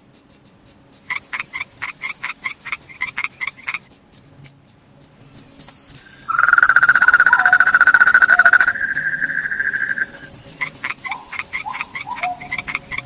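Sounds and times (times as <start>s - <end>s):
crickets chirping: 2.6s - 13.0s
frog calls: 5.6s - 13.0s
frog trill: 6.0s - 13.0s.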